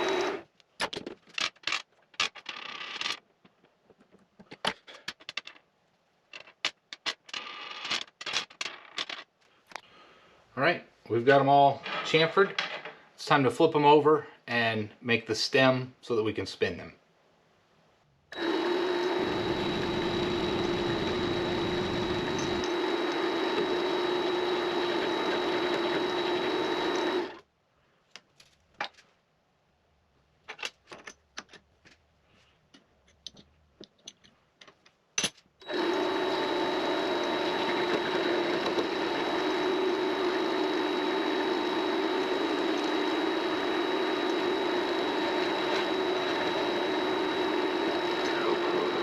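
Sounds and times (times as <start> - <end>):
lathe whining: 0.0 - 0.4, 18.4 - 27.4, 35.6 - 49.0.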